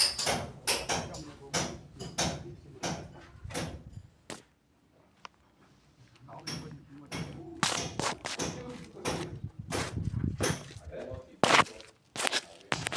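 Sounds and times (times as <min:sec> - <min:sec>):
sharp knocks and clatter: 0:00.0 - 0:03.9, 0:06.4 - 0:10.7.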